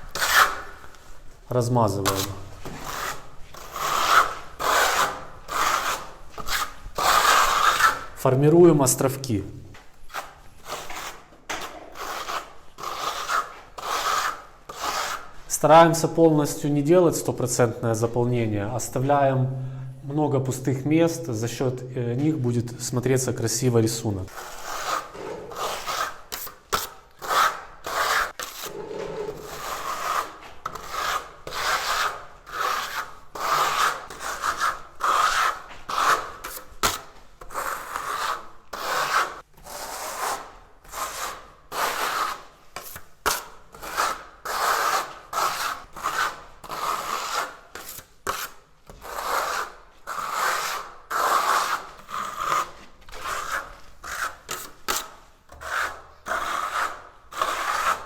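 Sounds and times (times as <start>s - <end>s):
trowel scraping plaster: 0.0s - 1.0s, 2.0s - 8.2s, 10.0s - 15.4s, 24.3s - 58.0s.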